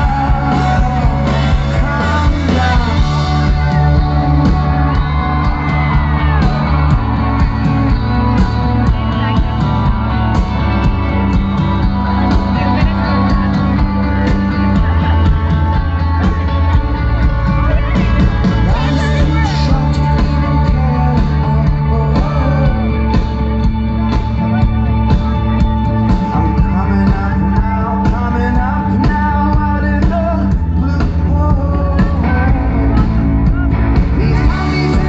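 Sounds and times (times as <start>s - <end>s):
bass notes: 0.0s - 35.0s
drums: 0.0s - 35.0s
guitar: 0.0s - 35.0s
person singing: 0.0s - 35.0s.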